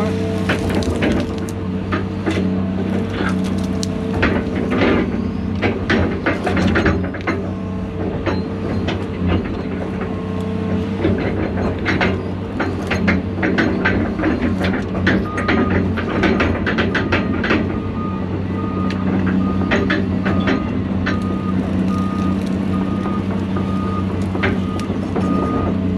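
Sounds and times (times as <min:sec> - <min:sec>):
branches cracking and snapping: 0:00.0 - 0:05.0, 0:20.9 - 0:25.9
excavator diesel engine running: 0:00.0 - 0:25.9.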